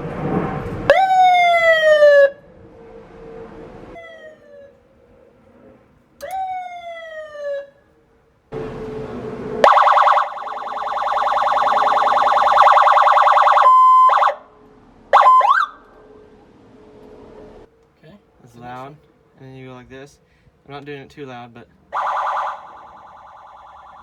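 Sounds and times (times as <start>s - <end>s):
electronic police siren: 0.9s - 2.5s, 3.9s - 5.0s, 6.2s - 7.8s, 8.6s - 15.9s, 22.0s - 24.0s.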